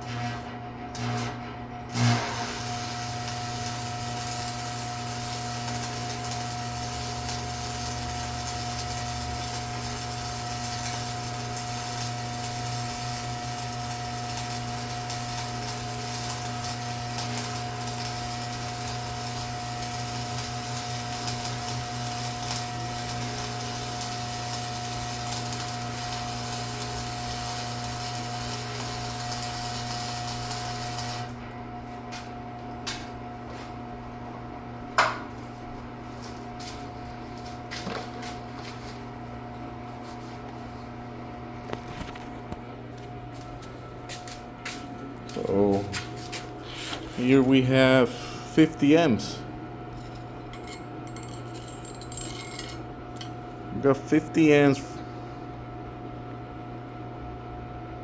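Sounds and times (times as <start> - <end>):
welding arc crackling: 0.0 - 31.4
electrical hum: 0.0 - 58.0.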